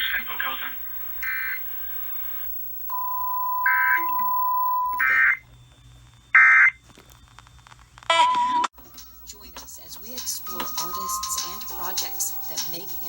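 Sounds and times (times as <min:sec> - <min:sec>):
harsh digital data bursts: 0:00.0 - 0:05.5
steady single-pitch tone: 0:02.9 - 0:05.4.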